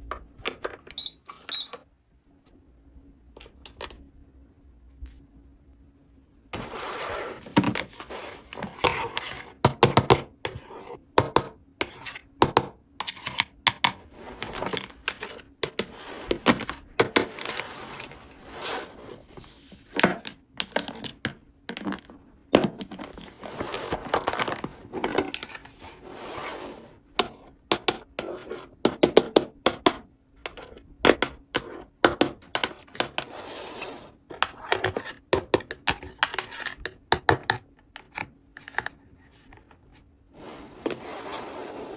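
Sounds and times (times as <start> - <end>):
hands handling plastic toy: 13.0 - 26.0, 34.3 - 41.1.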